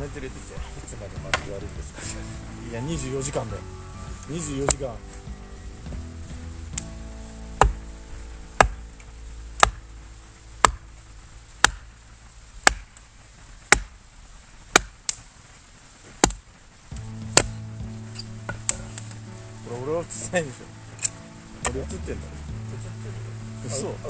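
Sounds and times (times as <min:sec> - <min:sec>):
axe chopping firewood: 0:11.6 - 0:11.8, 0:13.7 - 0:14.0, 0:14.7 - 0:15.0.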